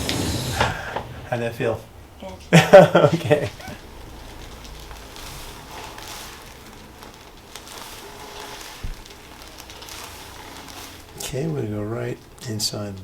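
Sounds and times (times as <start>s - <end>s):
faint rustling: 0.0s - 13.0s.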